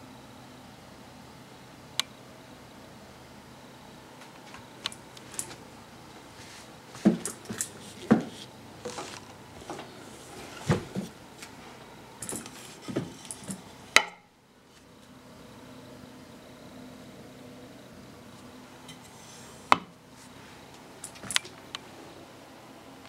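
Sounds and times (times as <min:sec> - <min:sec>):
knocks of objects being handled: 0:06.9 - 0:09.9, 0:12.2 - 0:14.3.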